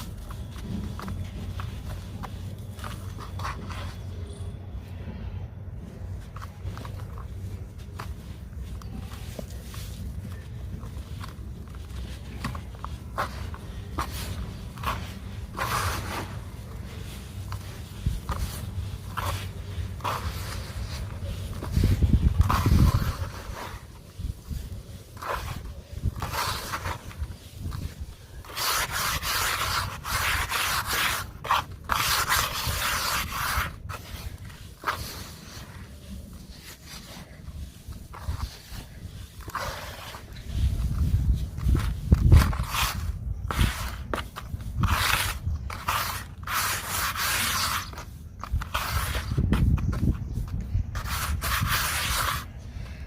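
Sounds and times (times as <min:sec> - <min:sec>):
dry earth crumbling and scratching: 0:06.2 - 0:52.4.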